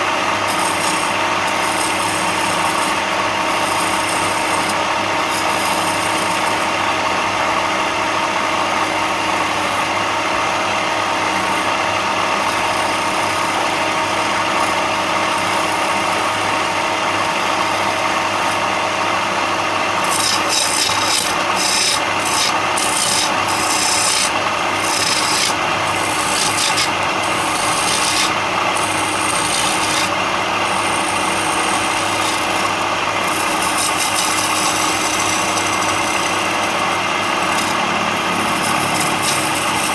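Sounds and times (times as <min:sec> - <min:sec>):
wood being rasped: 0:00.0 - 0:07.8, 0:11.4 - 0:39.9
machine hum: 0:00.0 - 0:39.9.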